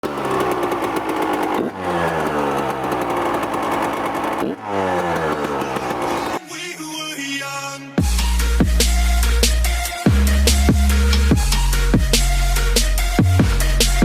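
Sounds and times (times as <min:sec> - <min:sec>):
dirt bike engine revving: 0:00.0 - 0:06.4.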